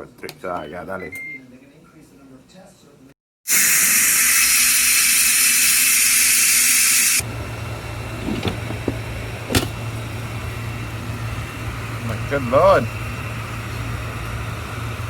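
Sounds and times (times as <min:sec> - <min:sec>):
pressure cooker venting steam: 0:03.5 - 0:15.0.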